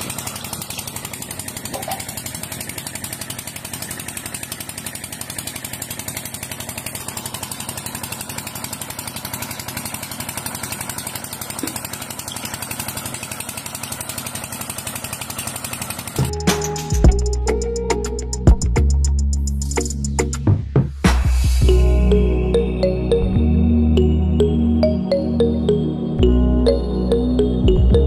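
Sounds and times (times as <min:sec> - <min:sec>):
small motor rattling buzz: 0:00.0 - 0:17.7
music with drums: 0:16.2 - 0:22.0, 0:27.6 - 0:28.0.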